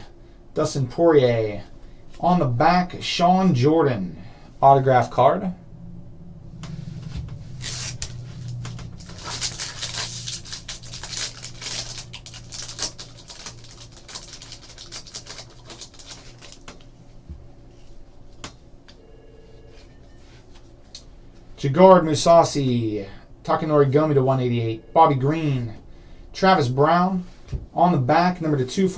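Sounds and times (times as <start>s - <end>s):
plastic wrapper crinkling and tearing: 7.6s - 16.9s.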